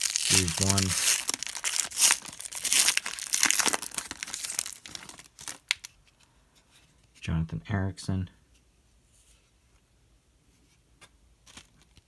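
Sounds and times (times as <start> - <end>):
wrapper crinkling and tearing: 0.0 - 6.0.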